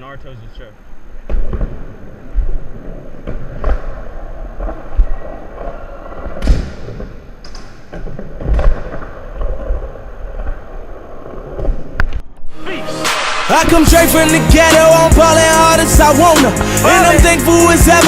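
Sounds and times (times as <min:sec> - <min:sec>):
skateboard wheels rolling: 0:01.2 - 0:12.3.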